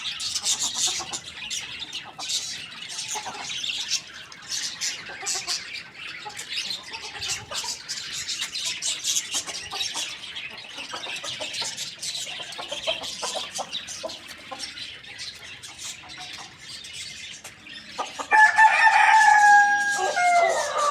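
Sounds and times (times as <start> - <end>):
chickens clucking: 0.0 - 20.9
rooster crowing: 18.3 - 20.9.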